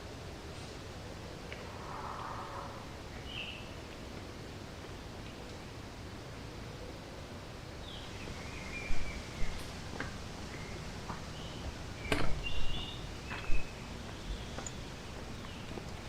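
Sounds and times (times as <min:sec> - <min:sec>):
steady outdoor hiss: 0:00.0 - 0:16.0
birds chirping: 0:07.8 - 0:16.0.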